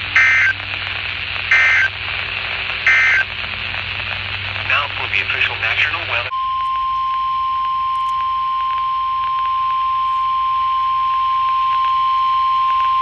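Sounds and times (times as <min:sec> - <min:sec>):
radio hiss: 0:00.0 - 0:06.4
high warning beep: 0:00.2 - 0:00.6, 0:01.5 - 0:01.9, 0:02.9 - 0:03.2.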